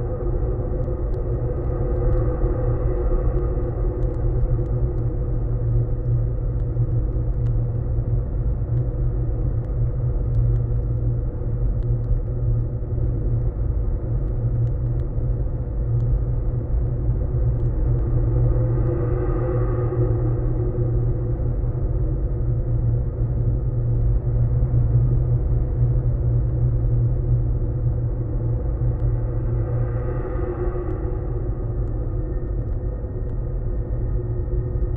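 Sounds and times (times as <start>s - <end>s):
faint ticks: 0.8s - 21.6s, 28.8s - 31.1s, 31.7s - 34.9s.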